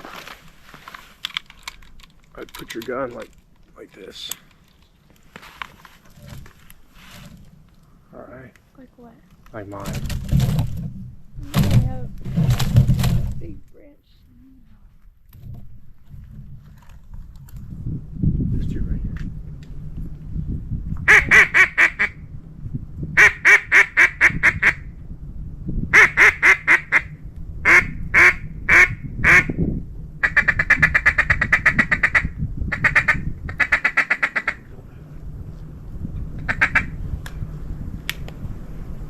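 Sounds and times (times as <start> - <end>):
duck quacking: 21.1 - 22.1, 30.2 - 34.6, 36.4 - 36.9.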